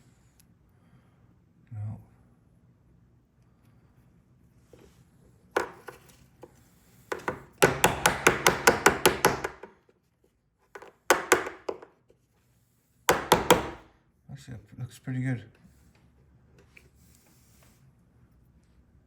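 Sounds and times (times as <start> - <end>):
hammer tapping on metal: 7.1 - 9.7, 13.1 - 13.8.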